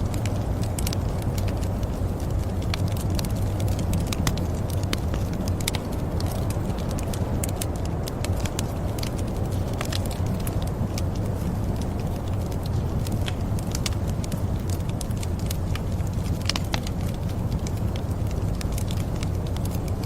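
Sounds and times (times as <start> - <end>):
steady low rumble: 0.0 - 20.0
wood fire crackling: 0.0 - 20.0.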